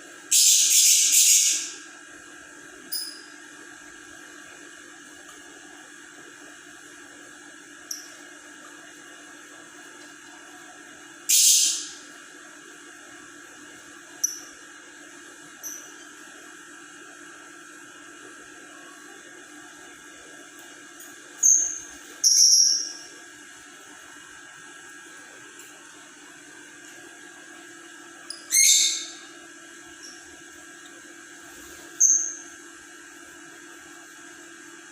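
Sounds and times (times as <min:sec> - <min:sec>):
steady low hum: 0:00.0 - 0:34.9
lovebird chirping and squawking: 0:28.4 - 0:29.2.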